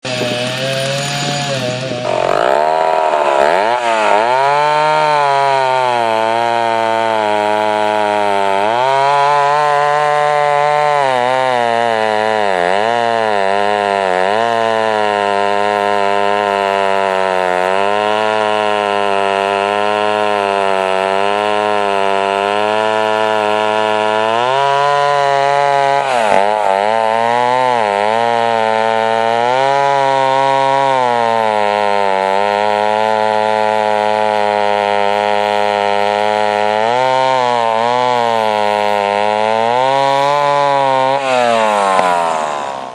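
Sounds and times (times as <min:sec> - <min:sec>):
chainsaw engine running: 0:00.0 - 0:42.9.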